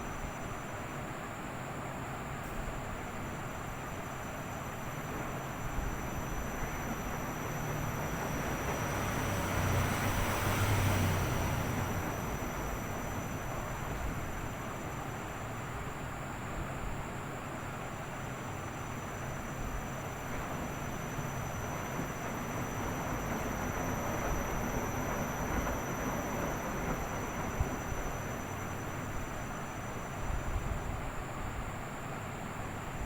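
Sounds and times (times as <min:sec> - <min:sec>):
washing machine running: 0:04.2 - 0:15.9, 0:16.5 - 0:31.1.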